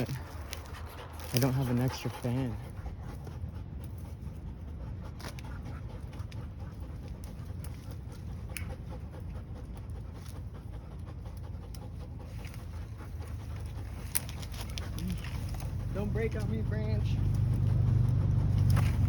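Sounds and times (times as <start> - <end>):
twigs snapping: 0.0 - 1.6, 5.2 - 10.6, 11.4 - 16.6, 17.2 - 19.0
branches rustling: 0.0 - 19.0.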